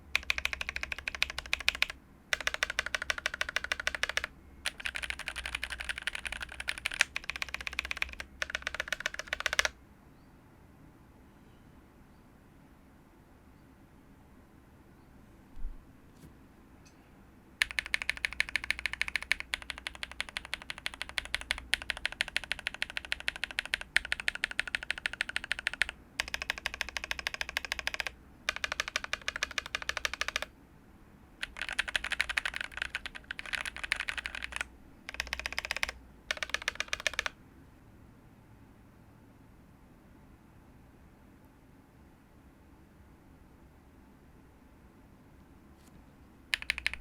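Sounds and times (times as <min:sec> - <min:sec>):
fast typing on mechanical keyboard: 0:00.0 - 0:09.8, 0:17.6 - 0:30.5, 0:31.4 - 0:37.4, 0:46.5 - 0:47.0.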